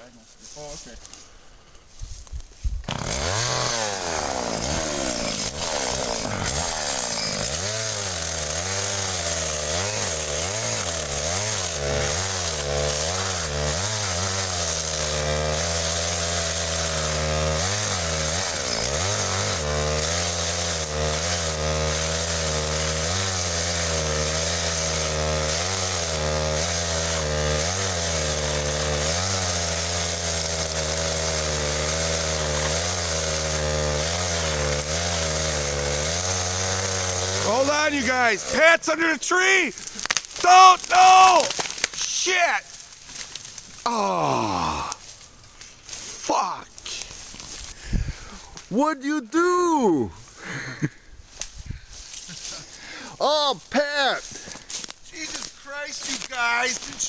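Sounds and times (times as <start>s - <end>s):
chainsaw engine revving: 2.9s - 39.1s.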